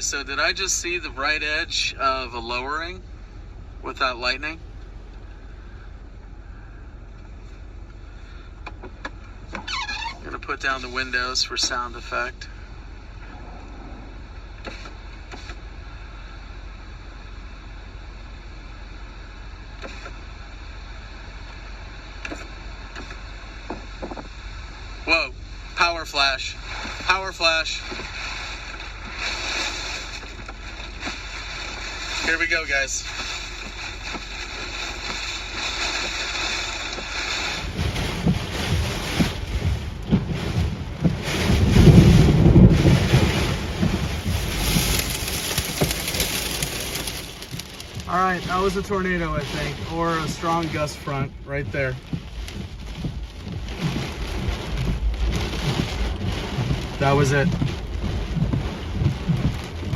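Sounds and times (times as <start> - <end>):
car interior road rumble: 0.0 - 59.9
wind buffeting microphone: 37.5 - 45.9, 47.5 - 59.9.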